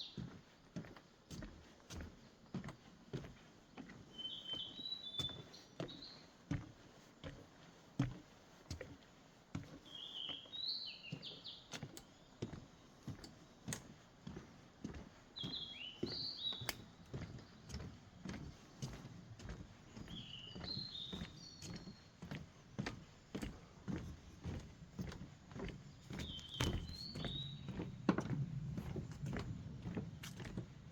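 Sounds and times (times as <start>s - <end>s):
songbird chirping: 4.2s - 6.2s, 9.9s - 12.3s, 15.4s - 17.6s, 19.9s - 22.2s, 25.6s - 30.8s
footsteps on a path: 11.2s - 30.9s.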